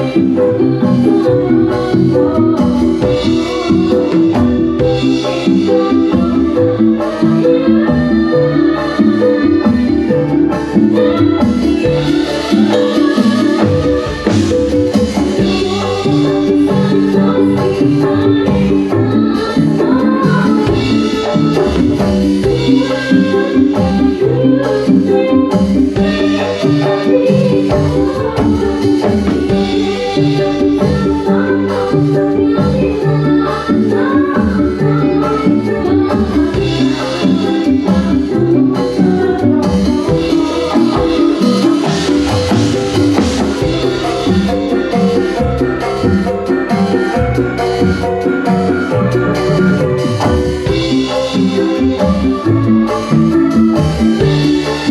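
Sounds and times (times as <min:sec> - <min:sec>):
upbeat music: 0:00.0 - 0:54.9.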